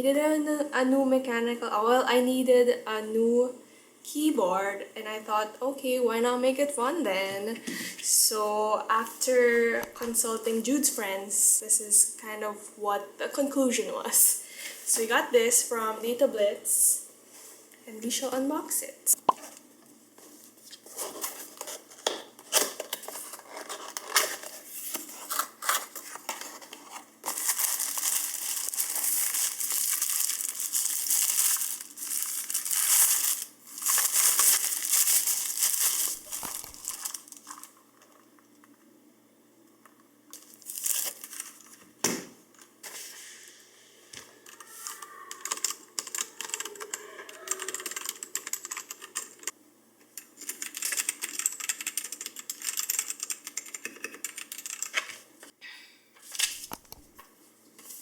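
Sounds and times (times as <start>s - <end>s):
packaging rustling: 20.7s - 38.3s, 40.4s - 41.8s
wrapping crinkling and tearing: 21.0s - 38.2s, 40.4s - 41.8s.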